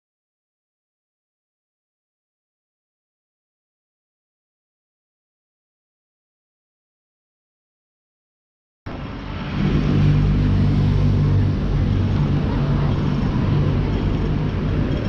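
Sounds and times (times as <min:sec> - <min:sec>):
city road traffic: 0:08.9 - 0:15.0.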